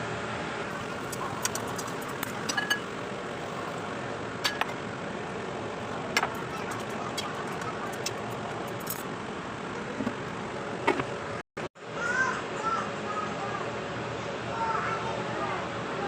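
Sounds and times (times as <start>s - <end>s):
cookware clinking: 1.0s - 3.1s, 4.4s - 4.8s.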